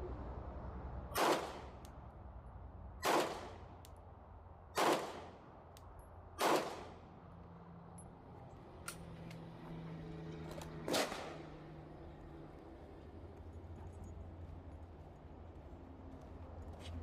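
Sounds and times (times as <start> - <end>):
pistol shots with echo: 1.2 - 1.7, 3.0 - 3.6, 4.7 - 5.4, 6.4 - 7.0.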